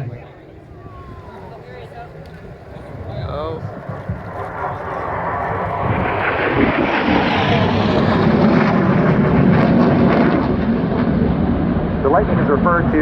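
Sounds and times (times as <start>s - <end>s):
fighter jet passing: 0.0s - 13.0s.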